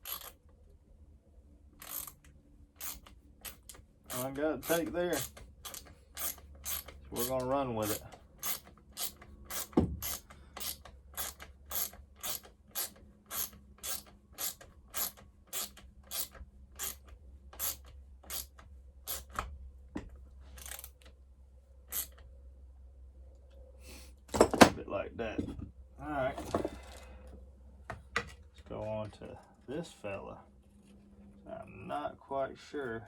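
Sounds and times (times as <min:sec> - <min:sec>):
ratchet clicking: 0:00.0 - 0:00.4, 0:01.8 - 0:19.4, 0:20.6 - 0:21.0, 0:21.9 - 0:22.2.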